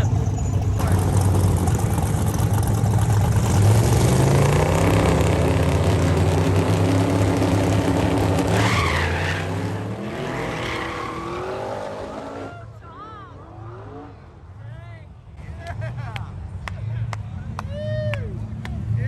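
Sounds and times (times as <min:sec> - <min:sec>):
drag race car engines roaring: 0:00.0 - 0:19.0.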